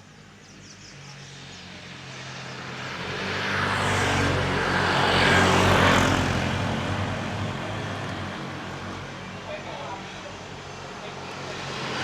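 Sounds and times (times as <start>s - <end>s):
vehicle engine hum: 0.0s - 12.0s
tyre and road noise: 1.3s - 12.0s.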